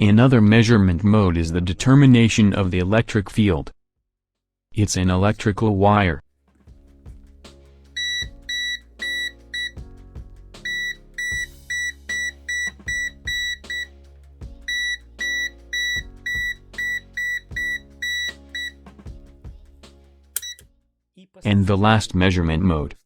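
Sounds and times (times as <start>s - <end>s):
multimeter beeping: 8.0s - 9.8s, 10.7s - 13.9s, 14.7s - 18.8s, 20.4s - 20.6s.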